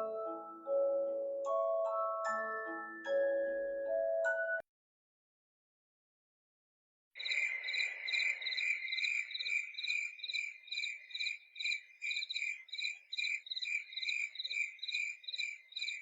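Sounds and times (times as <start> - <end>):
crickets chirping through speaker: 7.2 - 16.0.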